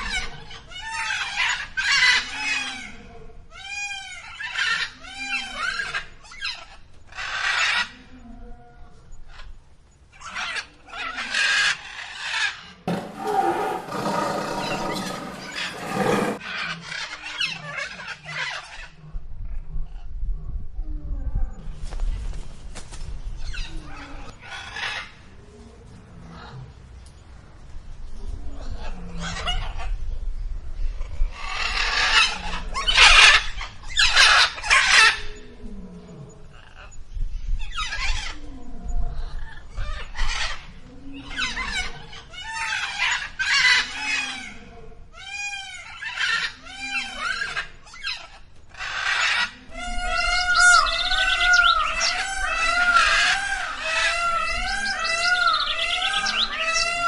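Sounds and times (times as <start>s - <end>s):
animal calls: 12.3s - 18.6s, 45.2s - 57.0s
animal squealing: 12.9s - 16.4s.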